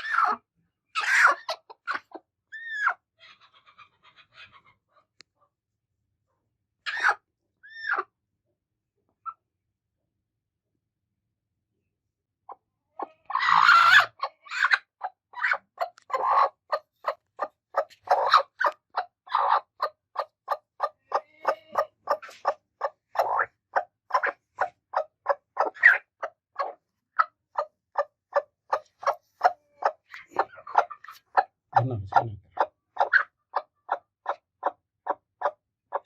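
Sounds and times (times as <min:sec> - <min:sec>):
hens clucking: 0:00.0 - 0:05.1, 0:12.5 - 0:36.0
harsh hen call: 0:13.0 - 0:14.8, 0:21.1 - 0:22.2.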